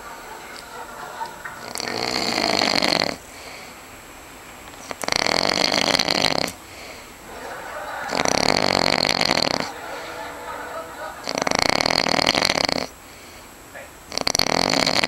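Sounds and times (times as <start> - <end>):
man snoring loudly: 1.6 - 3.2, 4.9 - 6.6, 8.1 - 9.8, 11.2 - 12.9, 14.1 - 15.0
quiet breathing: 1.6 - 4.0, 4.7 - 10.4, 11.2 - 13.9.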